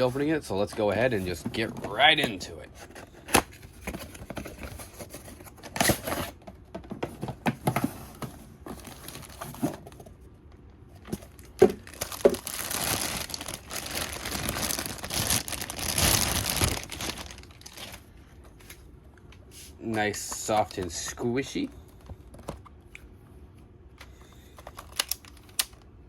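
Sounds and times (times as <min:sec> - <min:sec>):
plastic packaging rustling: 0:07.2 - 0:10.2, 0:11.0 - 0:18.9, 0:24.2 - 0:25.8
plastic crinkling and tearing: 0:08.7 - 0:09.6, 0:11.3 - 0:18.1, 0:24.6 - 0:25.8.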